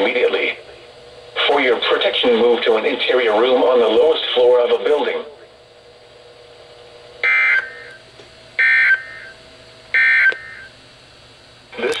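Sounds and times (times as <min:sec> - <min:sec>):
buzzing digital tone bursts: 0:07.2 - 0:08.0, 0:08.6 - 0:10.7.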